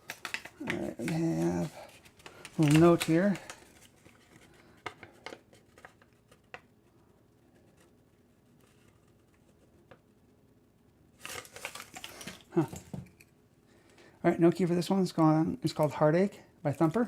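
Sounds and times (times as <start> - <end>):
rustling of small objects: 0.0 - 6.0, 11.2 - 13.2.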